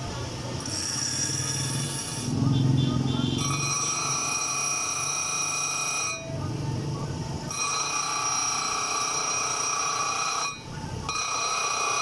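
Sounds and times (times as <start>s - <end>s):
power tool grinding steel: 0.6s - 2.4s, 3.3s - 6.3s, 7.5s - 12.0s.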